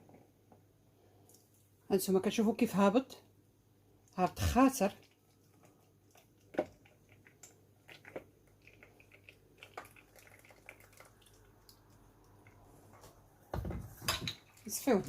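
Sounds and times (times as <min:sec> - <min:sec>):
juice dripping through strainer: 0:04.8 - 0:13.4.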